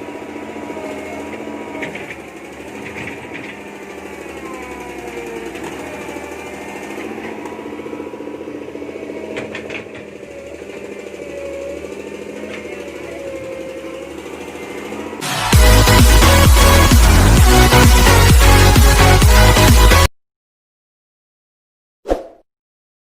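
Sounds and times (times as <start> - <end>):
diesel engine clattering: 0.0 - 20.1
sharp clicks and knocks: 9.3 - 10.1.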